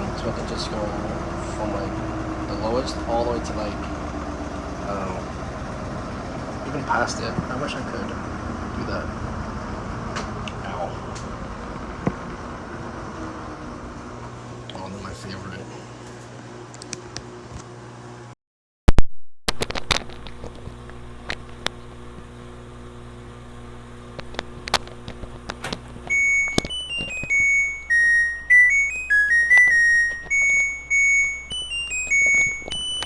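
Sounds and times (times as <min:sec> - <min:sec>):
washing machine beeping melody: 0:00.0 - 0:07.2, 0:26.1 - 0:33.0
washing machine low hum: 0:00.0 - 0:18.3, 0:19.8 - 0:33.0
clicks: 0:24.1 - 0:33.0.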